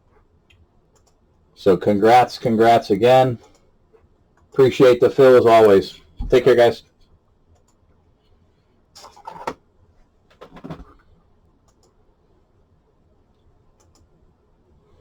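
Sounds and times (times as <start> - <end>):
faint clicks: 0.4 - 1.2, 7.5 - 7.8, 11.6 - 12.0, 13.3 - 14.1.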